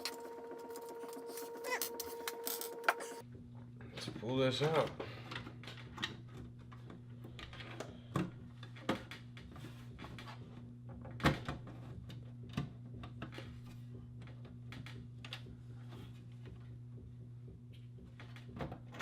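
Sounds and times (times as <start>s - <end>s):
steady low hum: 0.0s - 4.2s.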